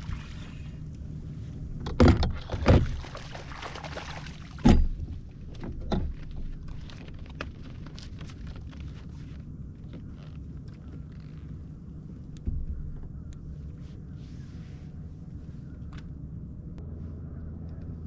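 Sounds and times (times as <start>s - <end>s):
low rumble: 4.4s - 18.0s
knocks and thumps on a kayak: 12.4s - 13.2s.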